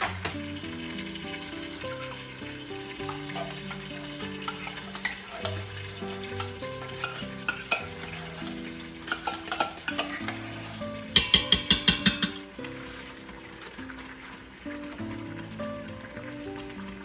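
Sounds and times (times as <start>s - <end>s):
food sizzling in a pan: 0.0s - 17.0s
soft background music: 0.0s - 17.0s
utensil clicking against pan: 1.8s - 12.8s
clattering strikes: 11.1s - 12.5s.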